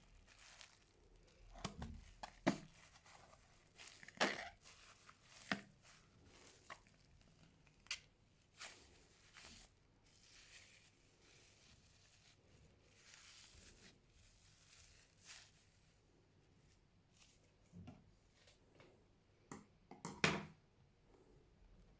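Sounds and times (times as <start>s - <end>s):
slime popping and crackling: 0.2s - 7.1s.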